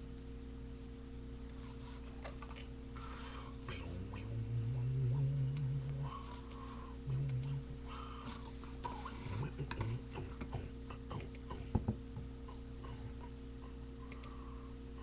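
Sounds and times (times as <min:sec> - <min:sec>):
low electrical hum: 0:00.0 - 0:15.0
short low vocal sound: 0:03.5 - 0:14.4.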